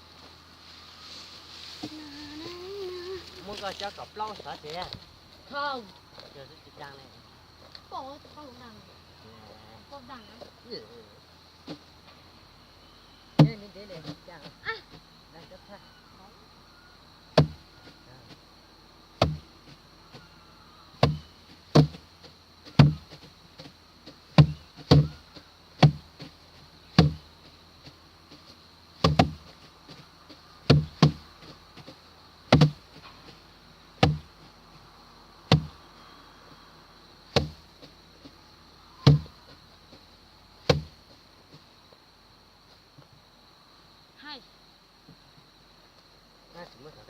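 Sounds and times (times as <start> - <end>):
rice sheaves thudding on wooden board: 13.4 - 15.0, 17.4 - 18.4, 19.2 - 20.3, 21.0 - 33.4, 34.0 - 34.5, 35.5 - 35.8, 37.3 - 38.4, 39.0 - 39.6, 40.6 - 41.0.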